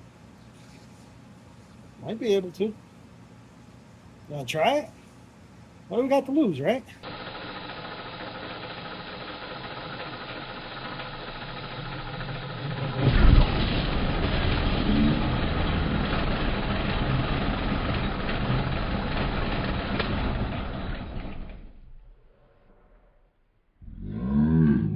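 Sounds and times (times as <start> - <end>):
milling machine cutting metal: 7.1 - 21.6.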